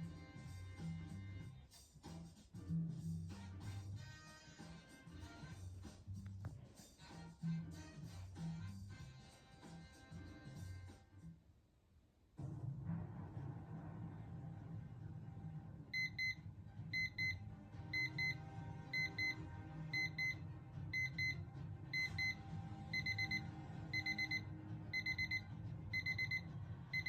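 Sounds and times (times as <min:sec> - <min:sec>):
alarm clock beeping: 0:16.0 - 0:27.0.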